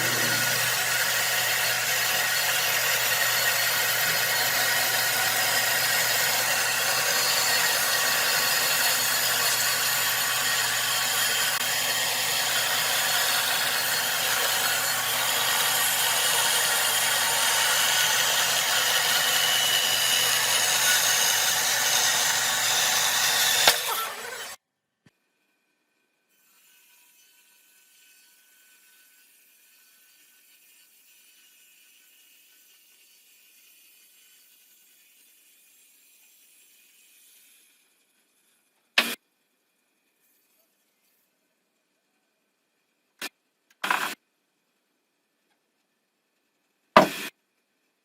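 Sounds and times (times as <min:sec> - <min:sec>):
power tool working wood: 0:00.0 - 0:24.6
sharp knock: 0:47.0 - 0:47.3.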